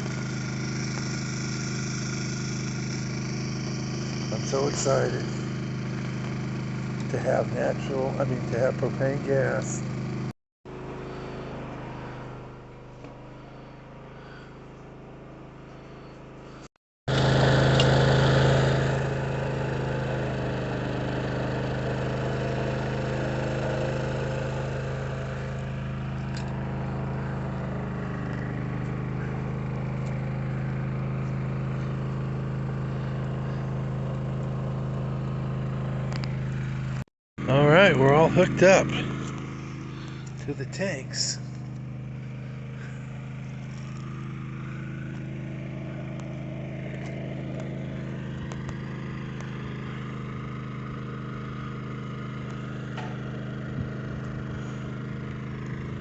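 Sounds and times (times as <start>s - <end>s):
steady engine hum: 0.0s - 56.0s.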